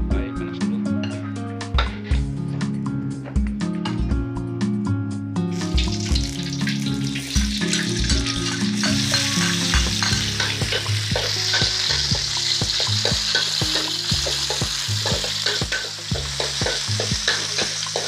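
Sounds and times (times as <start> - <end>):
aromatics frying in hot oil: 5.6 - 18.0
spatula scraping metal pan: 7.6 - 18.0.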